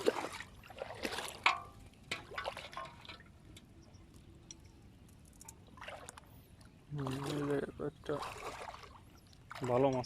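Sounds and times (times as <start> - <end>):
water splashing: 0.0 - 3.4, 5.4 - 10.0
water dripping: 0.0 - 10.0.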